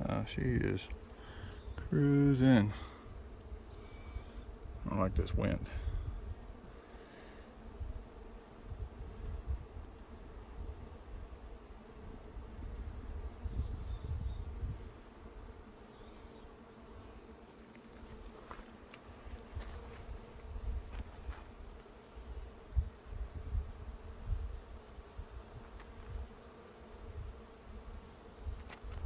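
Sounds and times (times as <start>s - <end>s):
honeybees buzzing: 0.0s - 29.0s
wind rumbling on microphone: 3.0s - 6.7s, 7.7s - 15.6s, 19.1s - 26.4s, 27.0s - 29.0s.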